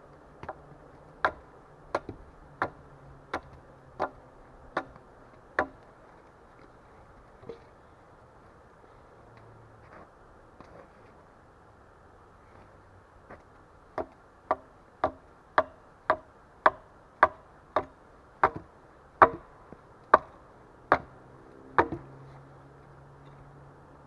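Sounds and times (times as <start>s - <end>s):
tool chopping into wood: 1.2s - 5.0s, 5.6s - 5.8s, 14.0s - 19.4s, 20.1s - 21.1s, 21.8s - 22.1s.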